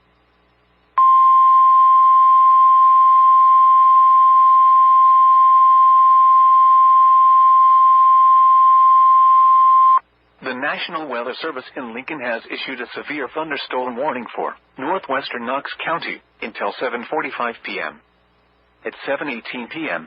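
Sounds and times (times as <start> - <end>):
steady warning alarm beep: 1.0 - 10.0.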